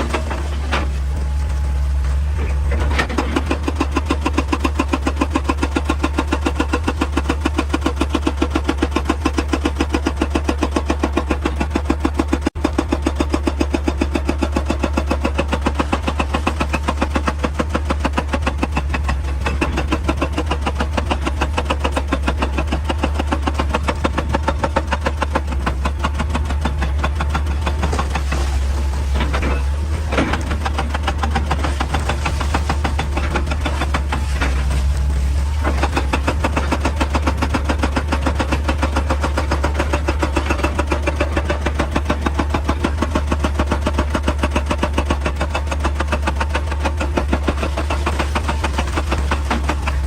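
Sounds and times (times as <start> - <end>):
diesel engine under load: 0.0 - 50.0
hydraulic breaker hammering rock: 2.4 - 50.0.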